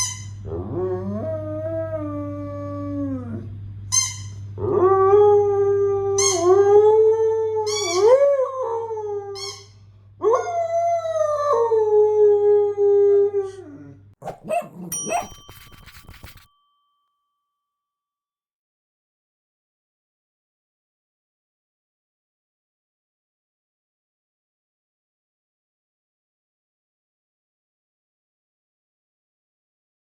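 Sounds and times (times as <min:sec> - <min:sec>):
squeaky toy squeaks: 0:14.2 - 0:16.5.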